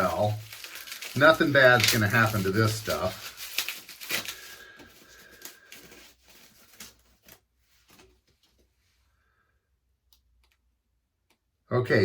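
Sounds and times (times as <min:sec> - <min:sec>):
packaging rustling and tapping: 0:00.0 - 0:08.7.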